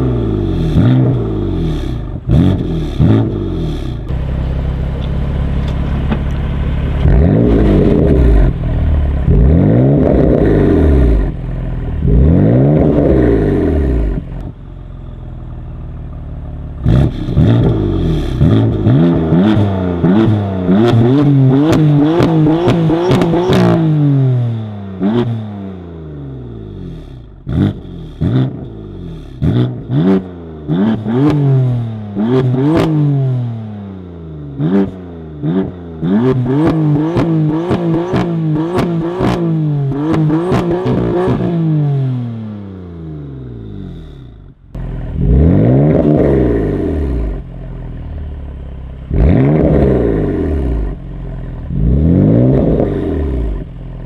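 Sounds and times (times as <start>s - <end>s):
car engine revving: 0.0s - 54.0s
exhaust crackles and pops: 4.9s - 9.4s.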